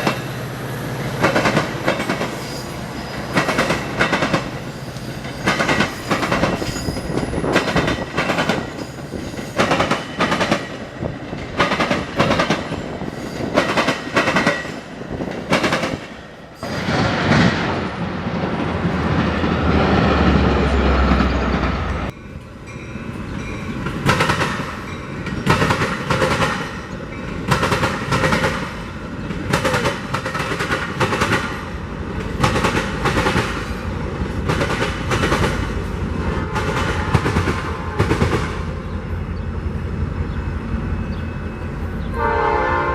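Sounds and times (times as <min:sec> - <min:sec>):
loud train rumbling: 0:00.0 - 0:42.9
train wheels clicking over rail joints: 0:01.0 - 0:18.2, 0:23.7 - 0:38.6.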